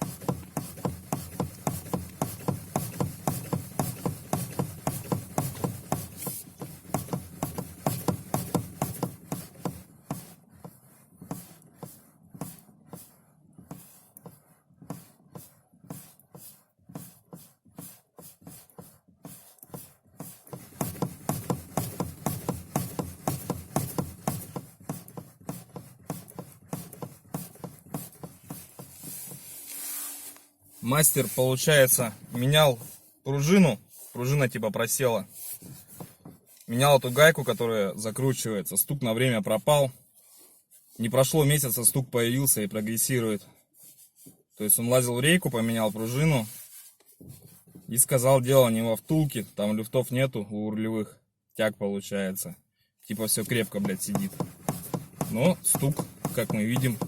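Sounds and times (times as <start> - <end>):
steering rack knocking: 0.0 - 13.1, 19.7 - 29.4, 53.5 - 57.0.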